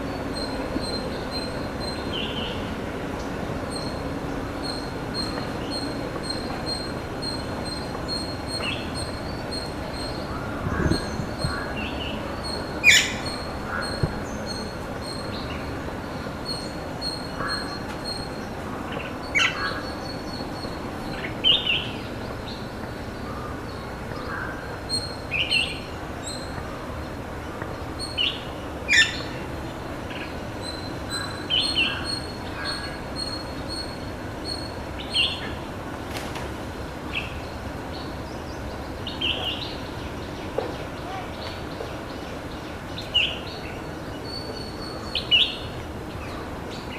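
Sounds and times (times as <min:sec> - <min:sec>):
steady background noise: 0:00.0 - 0:46.9.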